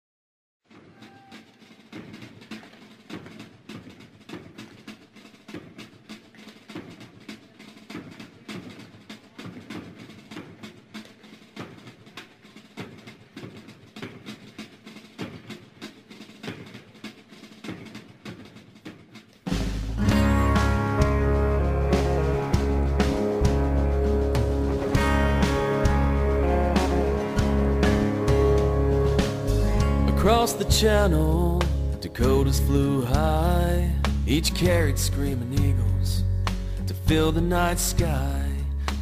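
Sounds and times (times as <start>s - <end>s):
snare drum cadence with rolls: 0.7s - 35.9s.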